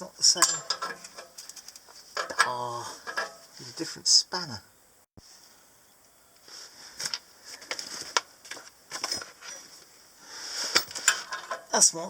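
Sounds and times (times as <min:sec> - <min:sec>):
metal spanners clinking: 0:00.3 - 0:03.5, 0:10.7 - 0:11.8.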